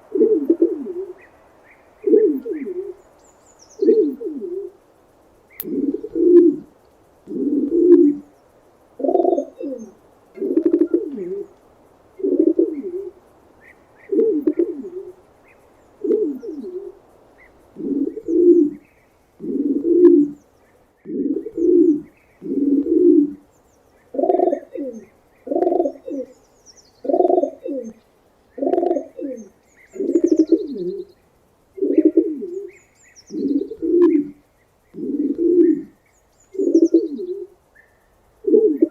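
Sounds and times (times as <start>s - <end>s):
pigeon cooing: 0.0s - 1.3s, 2.0s - 3.1s, 3.8s - 4.8s, 5.6s - 8.3s, 9.0s - 11.6s, 12.2s - 13.2s, 14.0s - 15.2s, 16.0s - 17.0s, 17.7s - 18.8s, 19.4s - 20.4s, 21.0s - 23.5s, 24.1s - 26.4s, 27.0s - 28.0s, 28.6s - 31.1s, 31.8s - 37.6s, 38.4s - 38.9s
small birds chirping: 0.0s - 38.9s.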